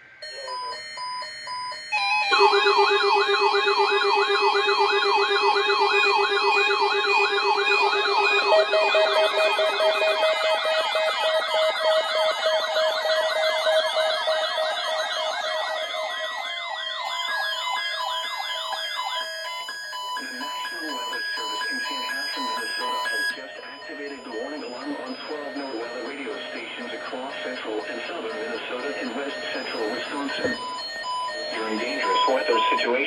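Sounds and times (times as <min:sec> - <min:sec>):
steady held tones: 0:00.0 - 0:33.0
warbling siren-like tones: 0:00.0 - 0:33.0
short beeps: 0:20.2 - 0:33.0.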